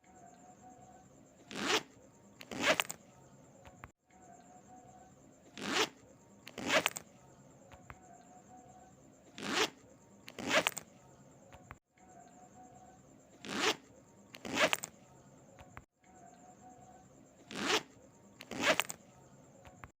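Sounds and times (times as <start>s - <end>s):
zipper zipping: 1.4s - 3.0s, 5.5s - 7.0s, 9.3s - 10.9s, 13.4s - 14.9s, 17.4s - 19.0s.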